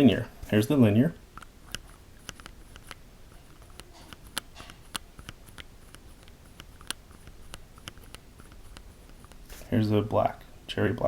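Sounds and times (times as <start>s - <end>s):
keyboard switch clicks and scrapes: 1.4s - 9.5s.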